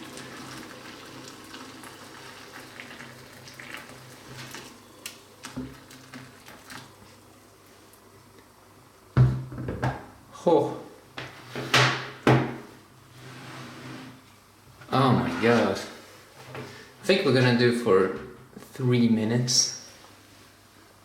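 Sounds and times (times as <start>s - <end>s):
hot water bubbling and popping: 0.0s - 8.1s.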